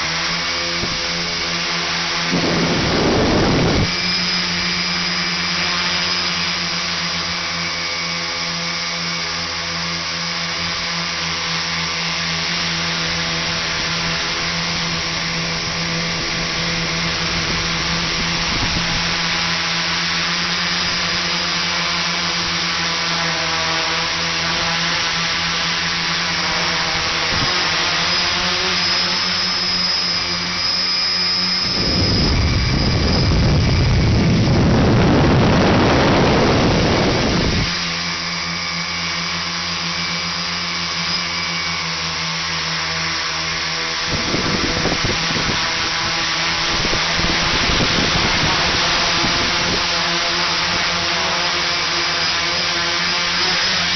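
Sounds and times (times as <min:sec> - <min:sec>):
rush of air noise: 0:00.0 - 0:06.2, 0:13.0 - 0:21.3, 0:29.1 - 0:39.0, 0:43.9 - 0:51.2
electric motors and propellers whining: 0:00.0 - 0:53.9.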